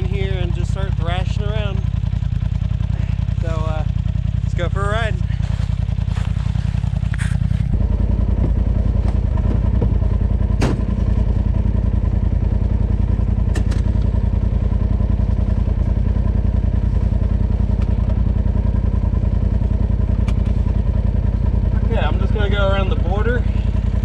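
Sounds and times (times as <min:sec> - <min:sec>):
engine low throb: 0:00.0 - 0:24.0
vehicle sharp knocks: 0:09.5 - 0:11.1.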